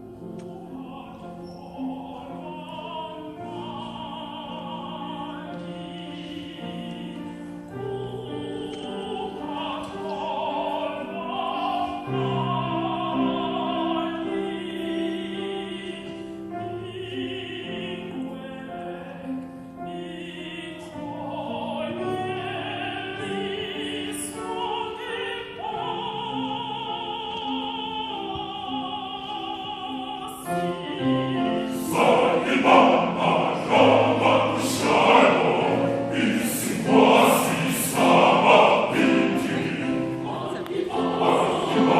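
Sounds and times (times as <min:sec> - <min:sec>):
vocal group singing in harmony: 0:00.0 - 0:41.9.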